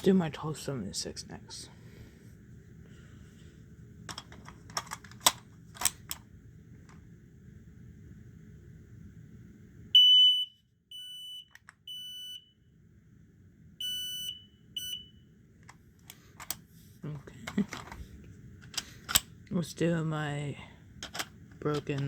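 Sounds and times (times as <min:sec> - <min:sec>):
handling clicks: 0:04.1 - 0:07.0, 0:11.5 - 0:11.8, 0:15.6 - 0:16.6, 0:18.6 - 0:19.4, 0:21.0 - 0:22.0
smoke alarm shrill beeps: 0:10.0 - 0:12.6, 0:13.8 - 0:15.3.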